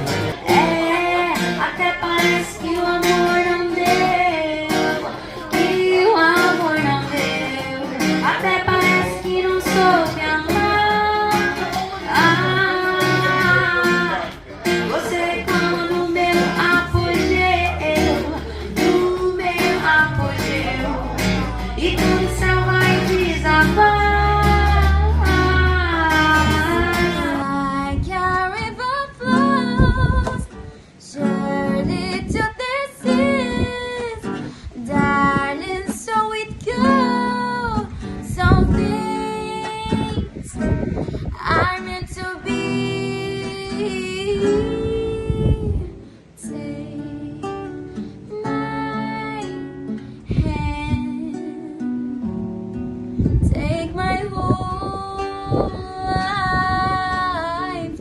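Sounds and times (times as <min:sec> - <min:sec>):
person singing: 0:00.0 - 0:52.2
acoustic guitar: 0:00.0 - 0:58.0.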